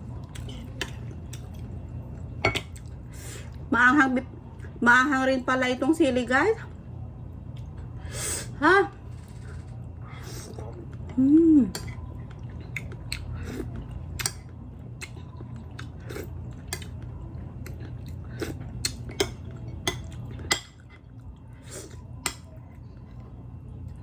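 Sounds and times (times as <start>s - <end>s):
steady low hum: 0.0s - 24.0s
person chewing food: 0.1s - 3.6s, 11.7s - 22.3s.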